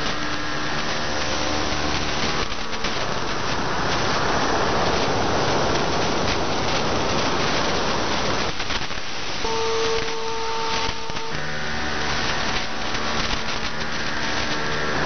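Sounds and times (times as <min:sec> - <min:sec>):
radio static hiss: 0:00.0 - 0:15.0
steady radio tone: 0:09.4 - 0:15.0.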